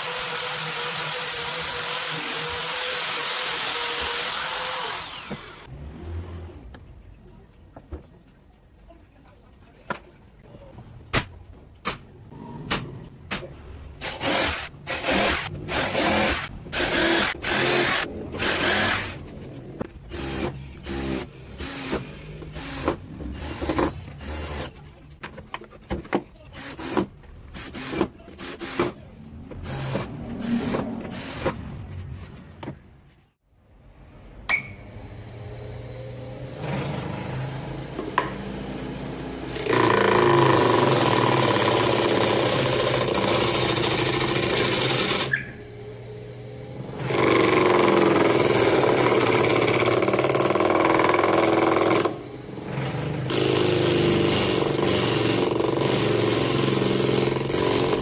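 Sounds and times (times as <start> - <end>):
power tool running harshly: 0.0 - 5.7, 14.0 - 19.2.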